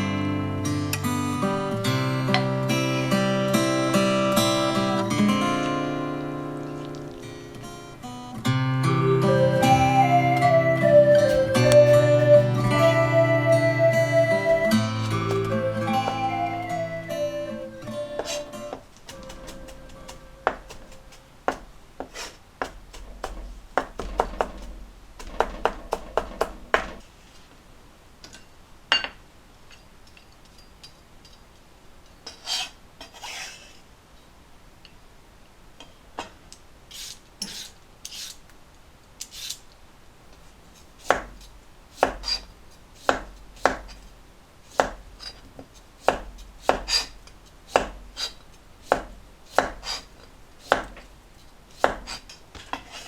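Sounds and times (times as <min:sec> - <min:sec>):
knife chopping on cutting board: 0:11.2 - 0:12.5, 0:14.5 - 0:16.3, 0:18.2 - 0:18.4, 0:19.1 - 0:27.0, 0:41.0 - 0:44.0, 0:44.7 - 0:45.4, 0:46.0 - 0:51.1, 0:51.8 - 0:52.3
knife scraping cutting board: 0:11.2 - 0:12.9, 0:14.5 - 0:16.3, 0:18.1 - 0:27.0, 0:32.3 - 0:33.8, 0:36.9 - 0:38.4, 0:39.2 - 0:39.6, 0:40.8 - 0:44.1, 0:44.7 - 0:45.4, 0:46.0 - 0:51.1, 0:51.7 - 0:53.0.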